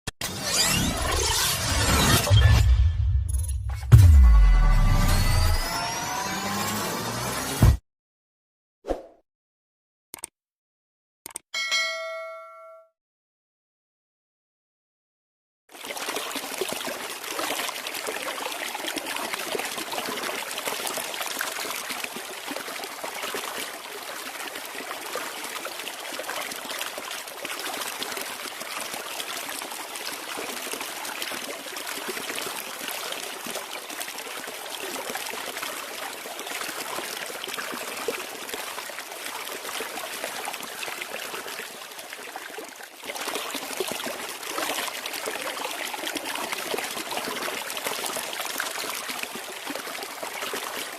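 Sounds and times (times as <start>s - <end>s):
flowing water rushing: 15.7s - 50.9s.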